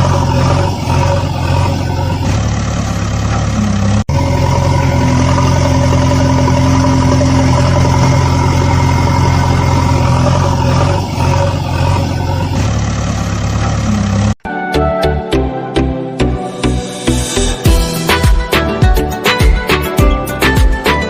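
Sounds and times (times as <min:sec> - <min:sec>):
vehicle engine running: 0:00.0 - 0:14.4.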